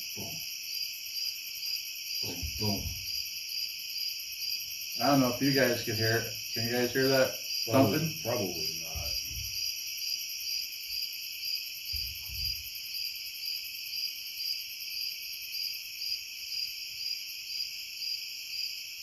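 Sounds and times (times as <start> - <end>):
night insects chorus: 0.0 - 19.0
low dull thump: 2.2 - 3.1, 8.9 - 9.6.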